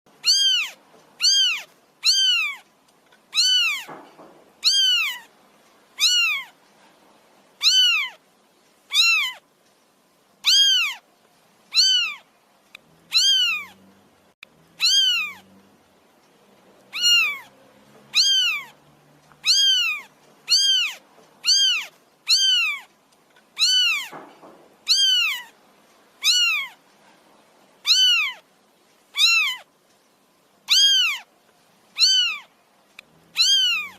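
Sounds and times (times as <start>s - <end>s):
kitten meowing: 0.2s - 2.6s, 3.3s - 4.0s, 4.6s - 5.3s, 6.0s - 6.6s, 7.6s - 8.2s, 8.9s - 9.4s, 10.4s - 11.0s, 11.7s - 12.2s, 13.1s - 13.8s, 14.8s - 15.4s, 16.9s - 17.5s, 18.1s - 18.8s, 19.4s - 22.9s, 23.6s - 24.2s, 24.8s - 25.5s, 26.2s - 26.8s, 27.8s - 28.4s, 29.2s - 29.7s, 30.7s - 31.3s, 32.0s - 32.5s, 33.3s - 33.9s.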